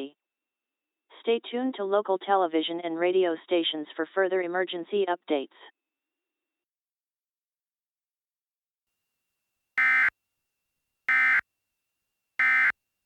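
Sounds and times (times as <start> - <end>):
electronic data bursts: 9.8 - 10.1, 11.1 - 11.4, 12.4 - 12.7.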